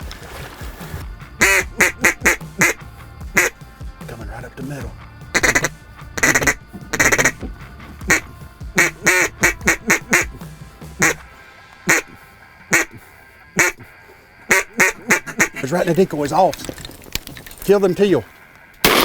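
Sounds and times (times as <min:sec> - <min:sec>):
duck call quacks: 0:01.4 - 0:03.6, 0:05.3 - 0:07.4, 0:08.0 - 0:13.9, 0:14.5 - 0:15.7.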